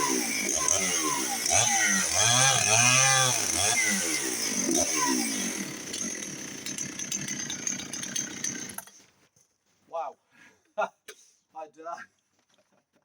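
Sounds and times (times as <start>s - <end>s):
chainsaw engine revving: 0.0s - 8.8s.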